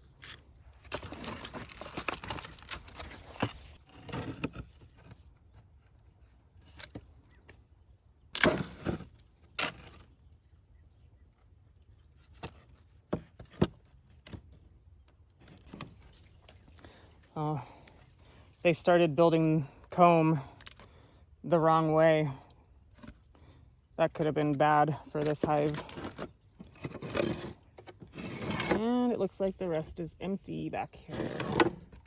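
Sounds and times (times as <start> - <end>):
rustling and scraping: 0.0 - 7.7, 11.3 - 19.0, 22.9 - 32.0
knocks and scrapes on wood: 25.4 - 29.0, 31.1 - 32.0.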